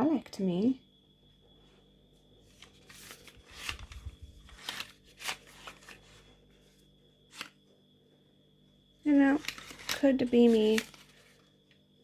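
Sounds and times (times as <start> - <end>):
pencil packaging rustles and clicks: 2.5 - 6.3, 7.3 - 7.6, 9.1 - 11.8.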